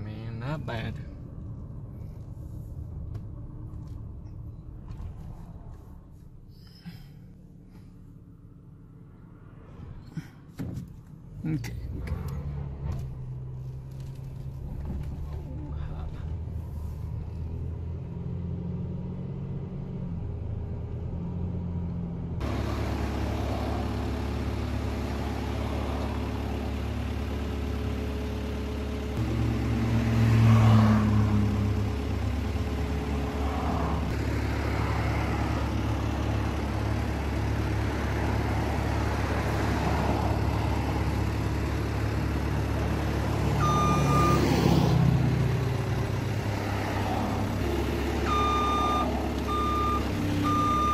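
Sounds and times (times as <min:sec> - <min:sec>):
vehicle engine running: 0:22.2 - 0:50.9.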